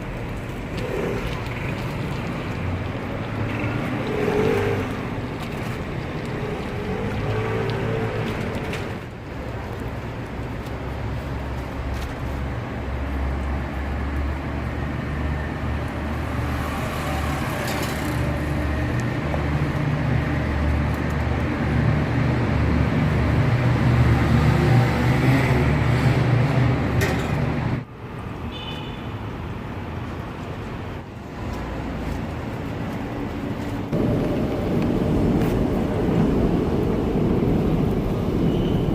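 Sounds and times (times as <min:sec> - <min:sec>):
street traffic: 0:00.0 - 0:38.9.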